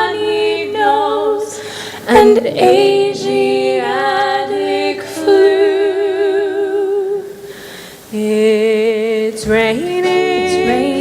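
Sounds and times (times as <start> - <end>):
musical accompaniment: 0.0 - 7.2, 9.7 - 11.0
woman singing with vibrato: 0.0 - 7.4, 8.1 - 11.0.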